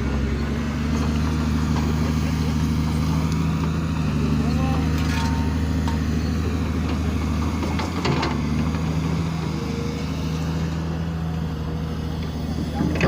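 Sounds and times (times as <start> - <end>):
construction machinery engine running: 0.0 - 13.0.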